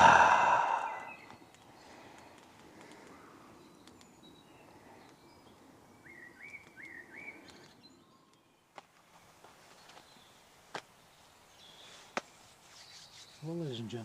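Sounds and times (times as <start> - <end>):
songbird calling: 0.0 - 8.6
woodland ambience: 0.0 - 14.0.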